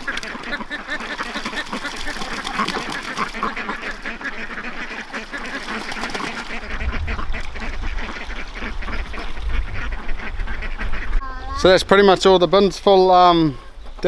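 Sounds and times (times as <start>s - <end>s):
ducks quacking: 0.0s - 14.0s
low rumble: 6.6s - 12.5s.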